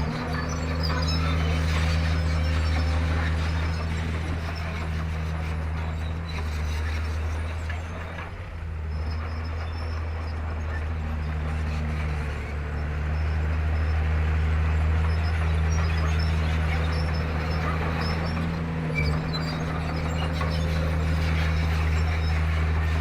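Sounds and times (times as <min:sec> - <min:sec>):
bulldozer diesel engine running: 0:00.0 - 0:23.0.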